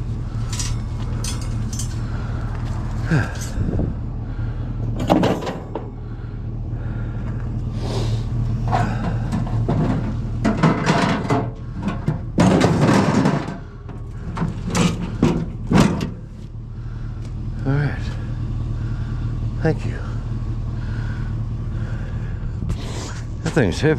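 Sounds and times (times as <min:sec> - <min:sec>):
vehicle engine hum: 0:00.0 - 0:23.9
metal scrap scraping and clanking: 0:00.3 - 0:02.2, 0:03.0 - 0:03.8, 0:08.6 - 0:16.4.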